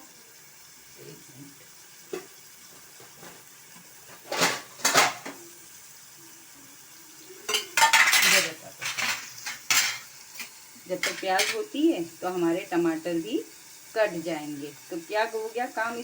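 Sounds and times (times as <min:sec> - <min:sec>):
onions frying in oil: 0:00.0 - 0:16.0
metal spoon scraping pot: 0:07.5 - 0:11.7.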